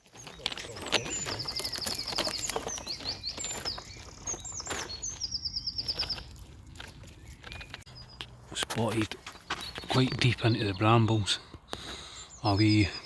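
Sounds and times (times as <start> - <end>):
clicks and crackles: 0.0 - 5.2
songbird singing: 0.0 - 13.0.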